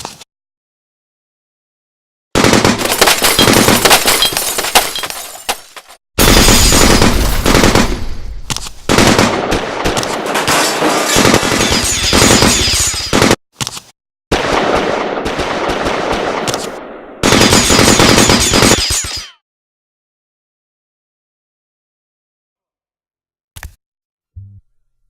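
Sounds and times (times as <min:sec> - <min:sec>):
automatic gunfire: 0:02.4 - 0:04.3, 0:06.2 - 0:08.0, 0:08.9 - 0:12.4, 0:14.3 - 0:18.8.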